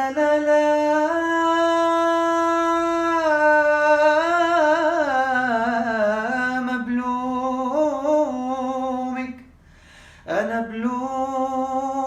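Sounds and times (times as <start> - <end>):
man singing unaccompanied: 0.0 - 9.5, 10.2 - 12.0.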